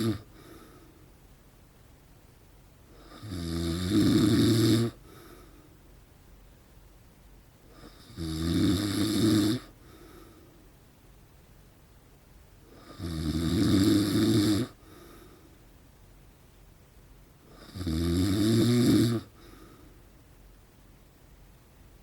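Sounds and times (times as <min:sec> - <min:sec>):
man snoring: 0:00.0 - 0:00.4, 0:02.9 - 0:05.2, 0:07.7 - 0:09.8, 0:12.7 - 0:14.8, 0:17.5 - 0:19.6
quiet breathing: 0:00.0 - 0:01.4, 0:02.8 - 0:06.0, 0:07.6 - 0:08.2, 0:09.2 - 0:10.9, 0:12.5 - 0:13.1, 0:14.0 - 0:16.3, 0:17.3 - 0:20.6.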